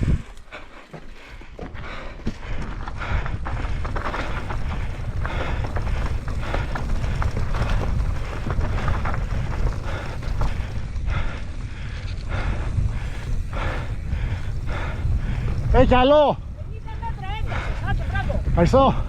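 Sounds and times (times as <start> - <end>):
wind buffeting microphone: 0.0 - 19.0
bike clattering over rocks: 0.8 - 10.8.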